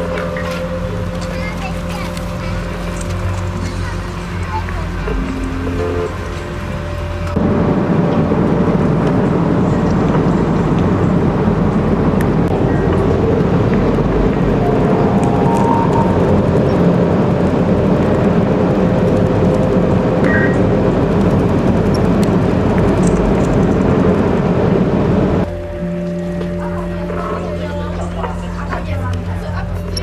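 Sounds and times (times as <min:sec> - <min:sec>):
traffic noise: 0:00.0 - 0:30.0
vehicle rumble: 0:00.0 - 0:30.0
faint held tones: 0:08.0 - 0:18.6.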